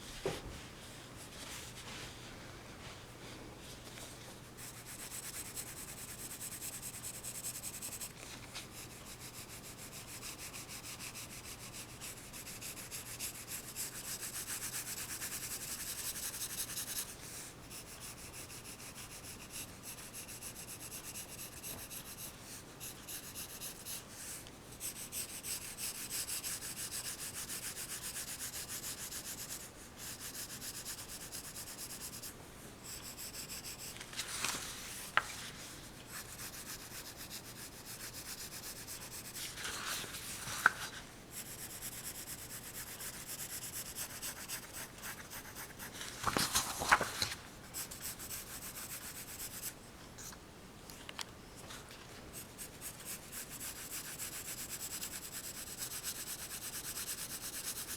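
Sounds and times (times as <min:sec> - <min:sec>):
pencil scratching on paper: 0:04.6 - 0:34.1, 0:36.0 - 0:46.1, 0:47.7 - 0:49.8, 0:52.3 - 0:57.9.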